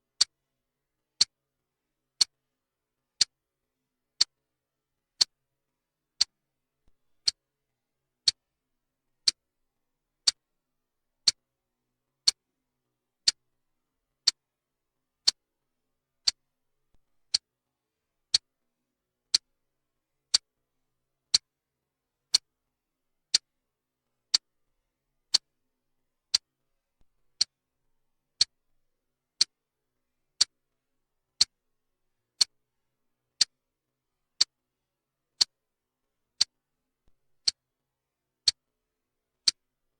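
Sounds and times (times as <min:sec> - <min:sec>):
clock ticking: 0:27.4 - 0:27.6.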